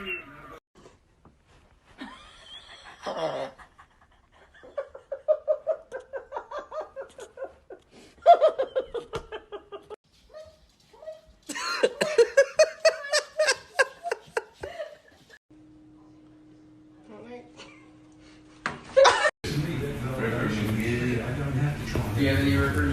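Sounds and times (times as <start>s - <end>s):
person laughing hard: 2.0s - 10.0s, 11.5s - 15.4s.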